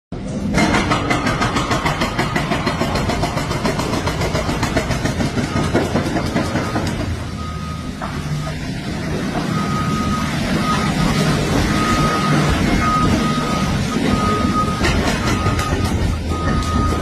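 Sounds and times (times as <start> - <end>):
excavator diesel engine running: 0.2 - 17.0
high warning beeps: 9.5 - 17.0.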